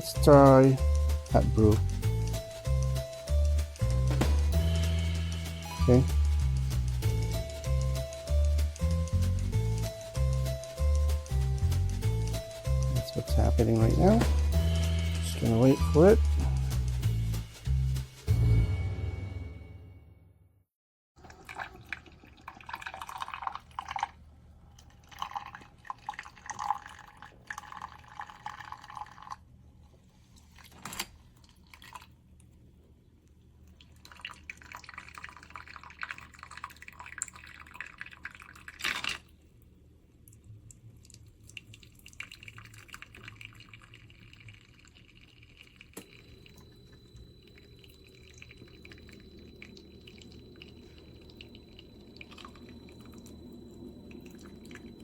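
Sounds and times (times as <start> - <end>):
coffee dripping into cup: 21.2 - 29.5, 30.6 - 32.2, 33.6 - 39.4, 40.2 - 55.0
coffee maker pump hum: 42.0 - 55.0.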